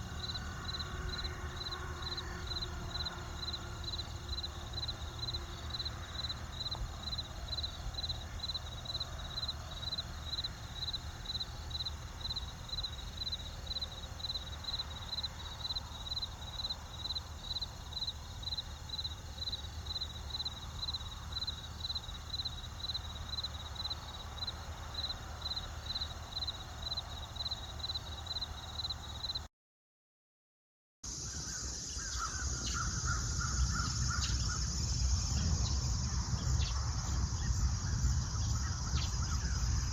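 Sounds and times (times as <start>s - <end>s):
low steady rumble: 0.0s - 27.8s
insect chirping: 0.0s - 29.5s, 31.1s - 39.9s.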